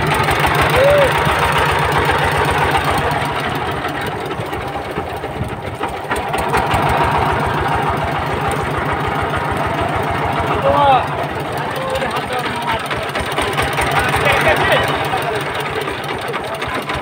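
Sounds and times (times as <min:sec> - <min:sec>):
engine running with low thudding: 0:00.0 - 0:17.0.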